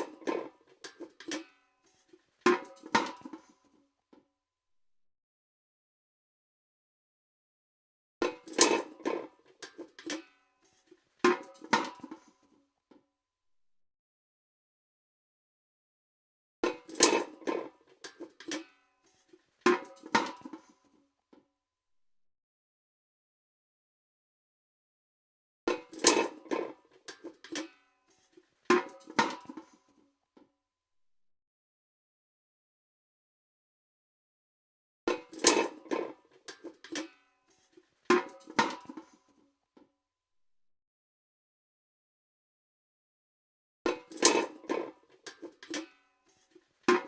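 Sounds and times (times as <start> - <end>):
metal bucket clanking: 16.7 - 18.7, 25.7 - 27.8, 35.1 - 39.2, 43.9 - 46.0.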